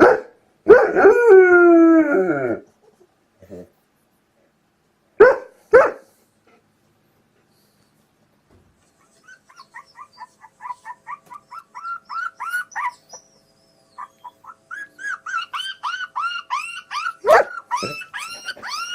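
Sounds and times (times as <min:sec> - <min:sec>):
dog yelping: 0:09.0 - 0:18.9.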